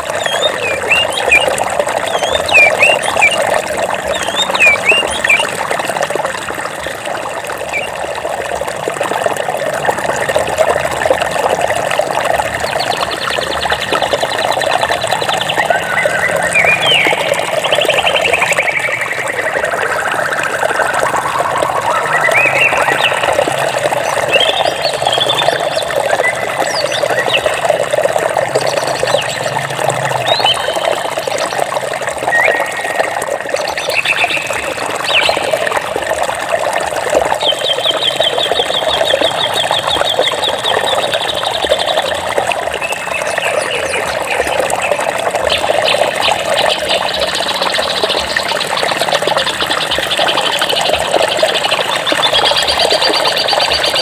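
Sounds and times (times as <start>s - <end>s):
flowing water: 0.0s - 54.0s
birds chirping and calling: 0.1s - 5.6s, 12.6s - 29.6s, 42.9s - 54.0s.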